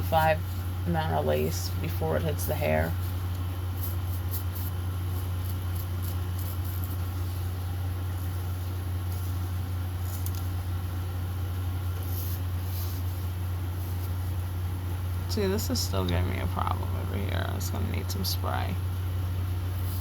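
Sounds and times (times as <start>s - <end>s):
steady low hum: 0.0s - 20.0s
faint rustles: 11.6s - 14.5s.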